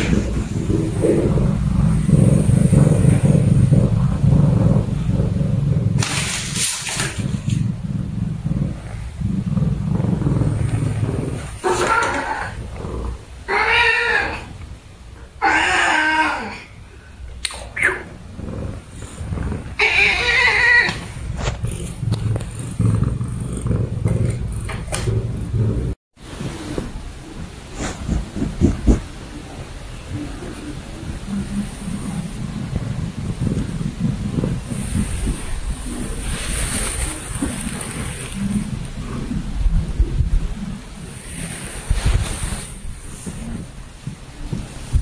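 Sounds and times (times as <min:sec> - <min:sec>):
cat purring loudly: 0:00.0 - 0:14.3, 0:17.8 - 0:45.0
rustling hiss: 0:00.0 - 0:45.0
cat chirping and meowing: 0:19.8 - 0:21.0.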